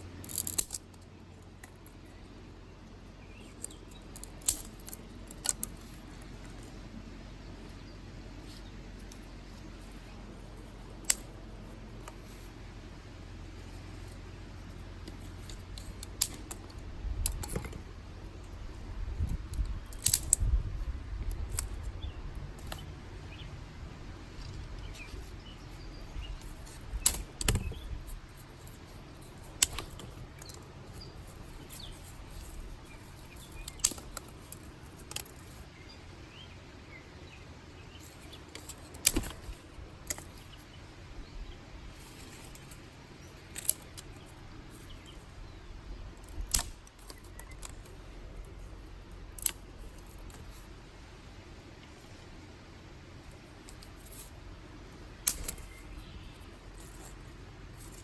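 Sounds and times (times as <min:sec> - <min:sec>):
dry sticks snapping: 0:00.1 - 0:02.3, 0:03.2 - 0:06.8, 0:07.8 - 0:12.5, 0:13.6 - 0:23.5, 0:24.1 - 0:35.9, 0:37.8 - 0:40.8, 0:41.9 - 0:50.8, 0:55.0 - 0:58.0
faint bird chirps: 0:55.5 - 0:57.1.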